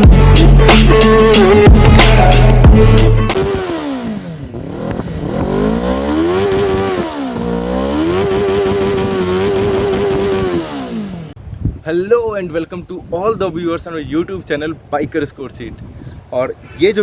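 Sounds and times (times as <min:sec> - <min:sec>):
motorcycle engine revving: 0:02.7 - 0:11.4.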